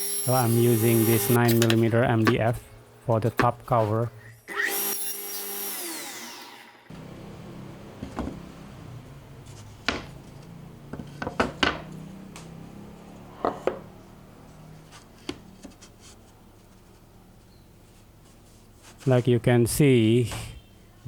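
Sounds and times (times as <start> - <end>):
wooden pieces and tools knocking: 1.5 - 3.9, 8.0 - 8.5, 9.5 - 12.6, 13.4 - 13.9.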